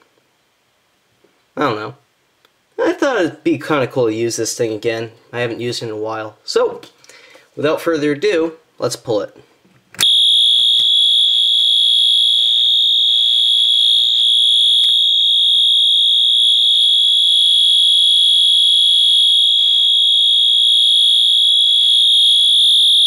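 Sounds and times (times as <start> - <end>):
fire alarm horn tone: 10.0 - 23.0.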